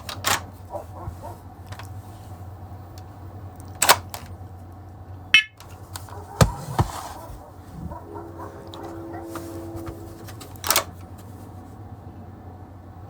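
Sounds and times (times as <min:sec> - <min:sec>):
high electronic alarm chirp: 0:05.4 - 0:05.6
alarm button clicks: 0:05.4 - 0:05.7.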